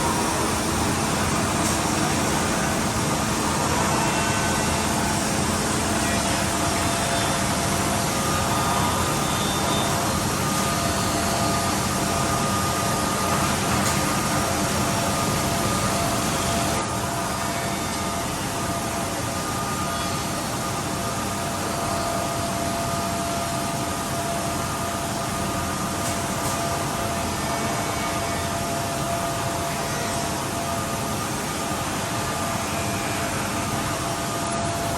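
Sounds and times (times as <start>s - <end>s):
cnc machine whining: 0.0s - 34.9s.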